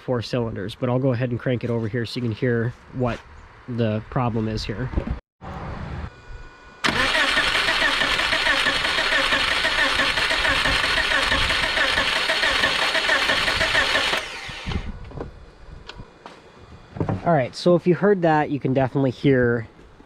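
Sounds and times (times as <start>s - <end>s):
car engine cranking on starter: 6.8s - 14.9s.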